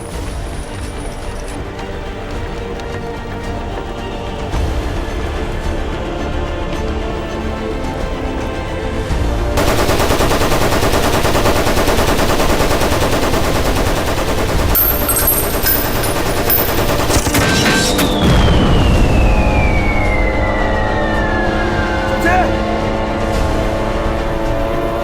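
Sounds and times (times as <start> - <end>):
music: 0.0 - 25.0
machine-gun fire: 9.6 - 18.3
falling whistle-like tone: 17.8 - 22.2.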